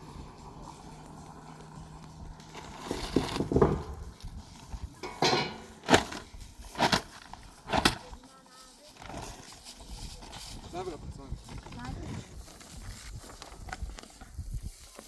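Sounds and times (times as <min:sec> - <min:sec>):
sharp knocks and clatters: 0:02.9 - 0:04.1, 0:05.0 - 0:06.2.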